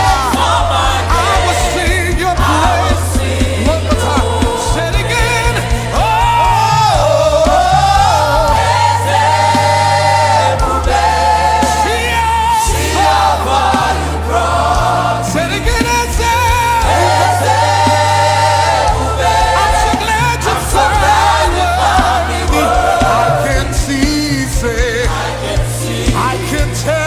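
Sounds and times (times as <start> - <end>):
bass line: 0.0 - 27.0
choir and congregation singing: 0.0 - 27.0
drum hits: 0.0 - 27.0.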